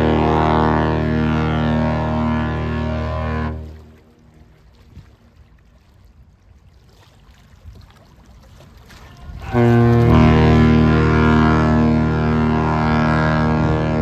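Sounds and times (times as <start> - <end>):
deep ship horn blast: 0.0 - 4.4, 9.4 - 14.0.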